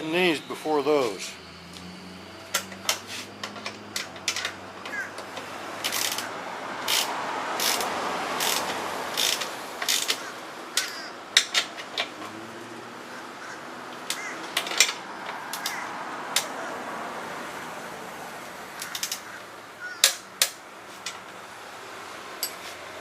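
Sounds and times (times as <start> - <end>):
ratchet wrench clicking: 5.8 - 12.1, 18.8 - 19.2.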